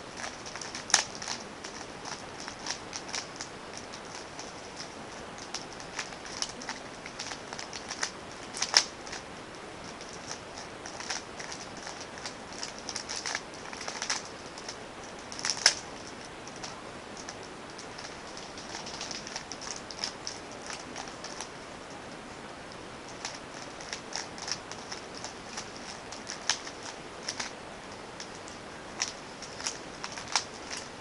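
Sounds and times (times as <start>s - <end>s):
puzzle cube layers clicking: 0.2s - 9.2s, 9.9s - 21.5s.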